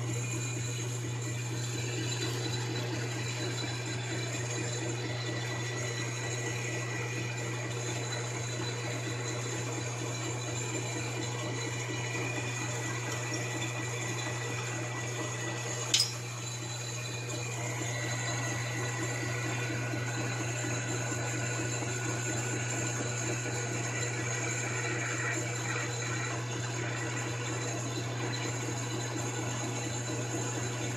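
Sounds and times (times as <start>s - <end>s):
metal lathe humming with whine: 0.0s - 30.9s
sharp click: 15.9s - 16.2s.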